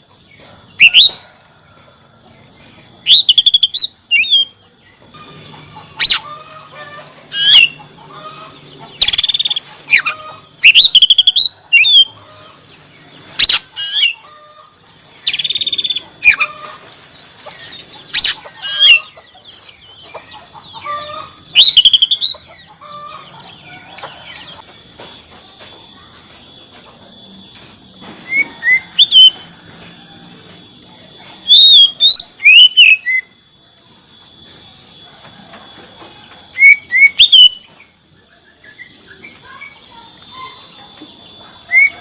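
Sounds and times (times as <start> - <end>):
bird singing whistled phrases: 0.8 - 1.2, 3.0 - 4.6, 9.0 - 12.2, 13.4 - 14.2, 15.3 - 16.4, 21.6 - 22.4, 31.4 - 33.4, 36.6 - 37.7, 41.7 - 42.0.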